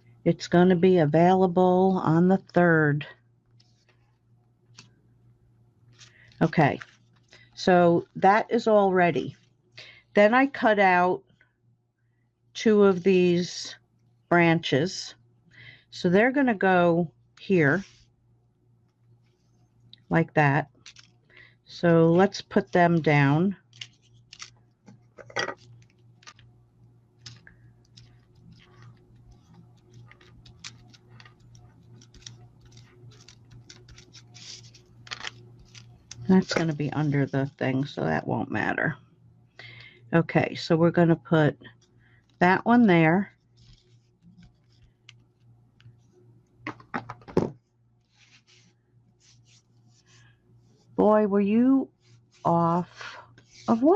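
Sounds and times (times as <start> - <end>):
steady low hum: 0.0 - 53.9
paper pieces clicking and tapping: 20.8 - 21.1, 23.7 - 24.5, 27.2 - 36.7.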